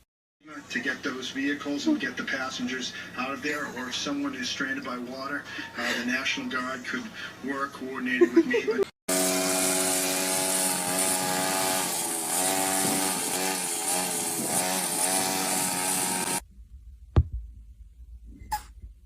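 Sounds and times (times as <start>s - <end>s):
motor buzzing hum: 9.1s - 16.4s.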